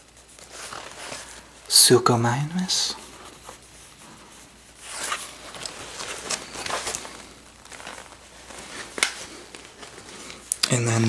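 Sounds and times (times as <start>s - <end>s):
paper pages rustling: 0.0s - 1.9s, 2.5s - 11.0s.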